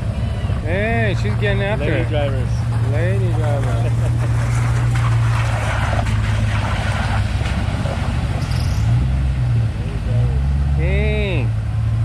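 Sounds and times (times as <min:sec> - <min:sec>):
off-road vehicle engine running: 0:00.0 - 0:12.0
rushing noise: 0:02.5 - 0:09.6.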